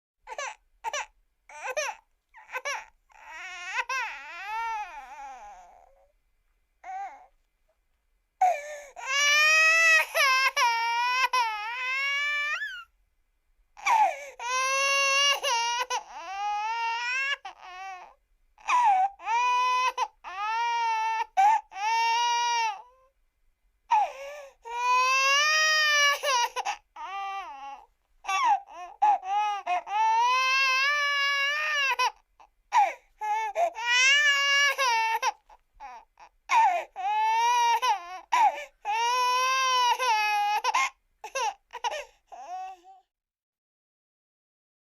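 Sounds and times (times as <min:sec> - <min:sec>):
breathy gasps: 0:08.4 - 0:09.0, 0:13.9 - 0:14.4, 0:23.9 - 0:24.6.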